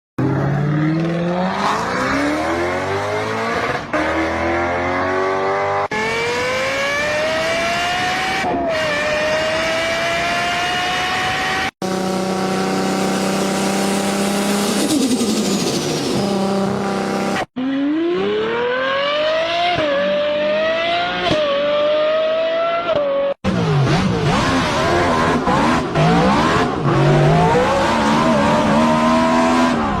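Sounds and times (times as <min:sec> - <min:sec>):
car engines revving: 0:00.2 - 0:30.0.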